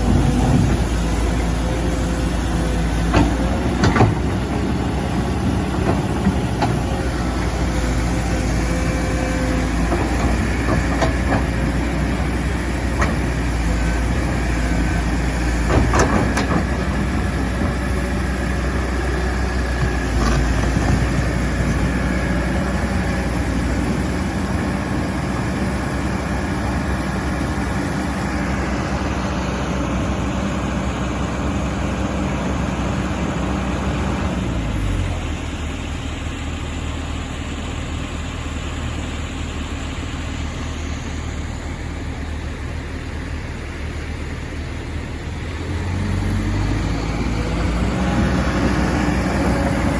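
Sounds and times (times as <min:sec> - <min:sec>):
excavator diesel engine running: 0:00.0 - 0:49.9
metal clanks and knocks: 0:03.0 - 0:07.1.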